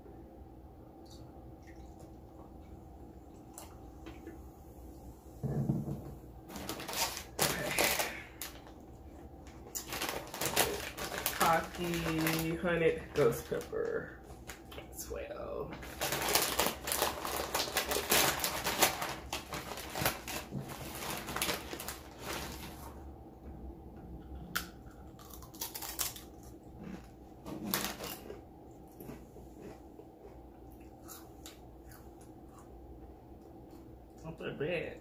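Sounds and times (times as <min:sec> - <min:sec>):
crunching tortilla chips: 0:06.5 - 0:13.5, 0:15.8 - 0:22.9, 0:24.6 - 0:29.8.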